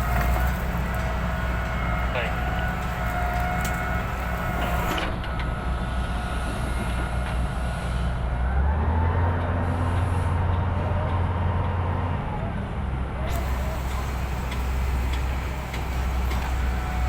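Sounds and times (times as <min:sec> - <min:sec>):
hydraulic whine: 0:00.0 - 0:10.6, 0:13.1 - 0:17.0
excavator diesel engine: 0:00.0 - 0:17.0.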